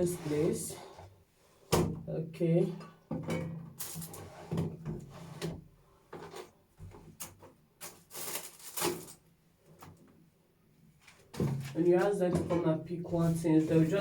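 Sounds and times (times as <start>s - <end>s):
rubbing scrapes: 0.0s - 1.0s
objects knocking and clattering: 3.1s - 5.0s.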